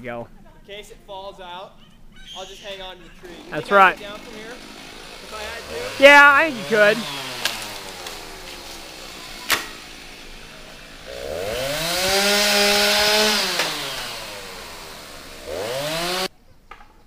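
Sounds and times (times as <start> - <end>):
chainsaw revving: 3.2 - 16.3.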